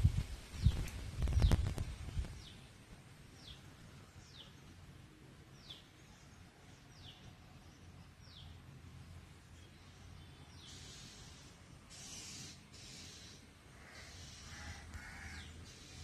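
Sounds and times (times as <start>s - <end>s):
faint background hiss: 0.0s - 16.0s
bird calling: 10.5s - 16.0s.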